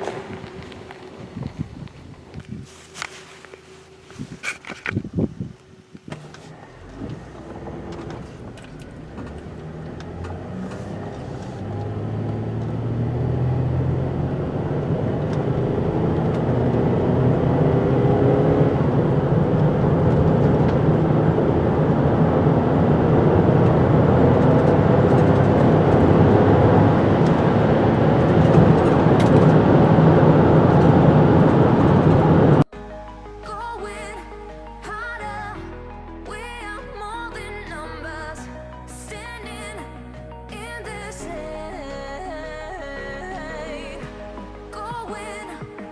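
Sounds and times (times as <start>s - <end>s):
road noise: 0.0s - 45.9s
car engine accelerating: 6.1s - 32.7s.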